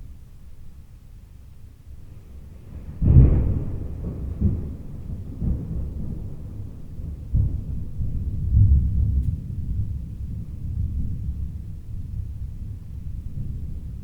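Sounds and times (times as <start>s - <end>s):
distant thunder rumbling: 2.6s - 9.2s.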